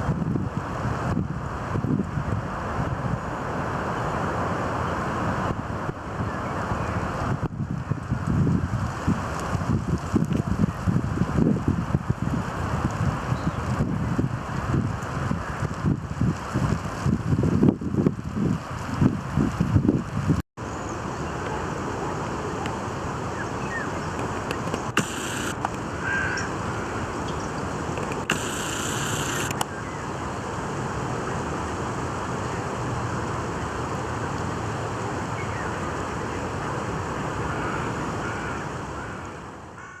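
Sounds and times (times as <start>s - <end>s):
outdoor nature ambience: 2.8s - 8.2s, 13.3s - 13.7s, 20.6s - 40.0s
faint bird calls: 23.3s - 27.5s
brief hissing: 24.7s - 25.7s, 28.1s - 29.6s.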